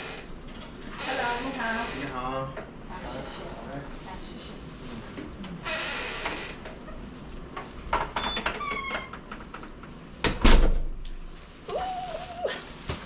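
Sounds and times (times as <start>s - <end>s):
door hinges squeaking: 8.1s - 9.4s
door shutting thump: 10.2s - 10.9s.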